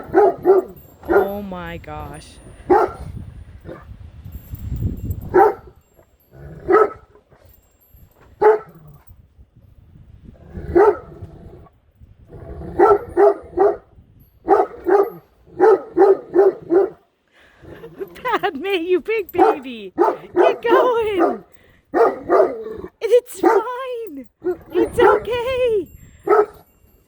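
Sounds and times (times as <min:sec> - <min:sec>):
dog barking deeply: 0:00.0 - 0:01.3, 0:02.7 - 0:03.1, 0:06.6 - 0:07.1, 0:10.5 - 0:11.6, 0:12.3 - 0:13.9, 0:14.5 - 0:17.0, 0:19.4 - 0:23.8, 0:24.4 - 0:25.2, 0:26.2 - 0:26.6
wind on microphone: 0:00.0 - 0:15.7, 0:24.4 - 0:27.0.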